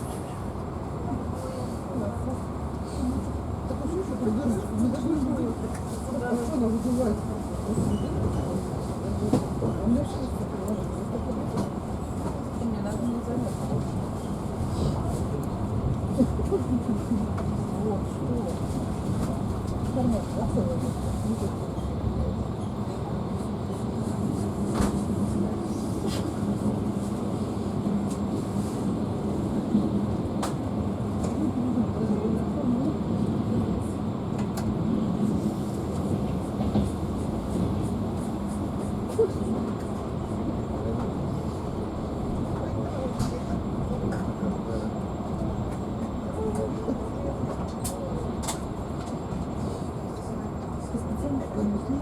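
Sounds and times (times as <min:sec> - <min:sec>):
train wheels rumbling on rails: 0:00.0 - 0:52.0.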